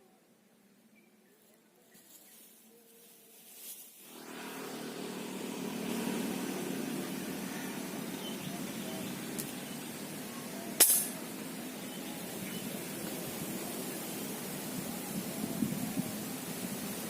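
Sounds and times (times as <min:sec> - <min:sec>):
steady rushing noise: 0:04.0 - 0:17.0
air rifle crack: 0:10.8 - 0:11.3.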